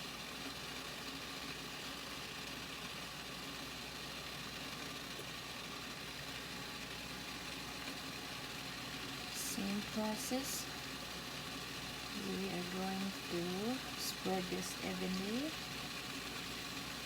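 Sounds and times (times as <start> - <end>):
steamer hissing: 8.0 - 17.0.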